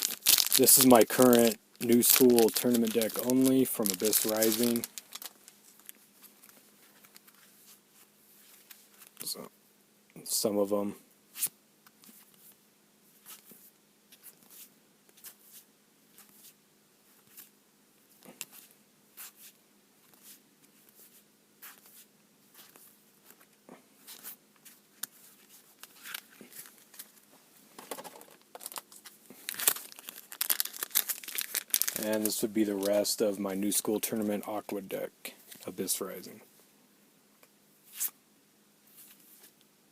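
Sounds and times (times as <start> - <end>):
card rustle: 0.0 - 9.3, 21.0 - 33.1.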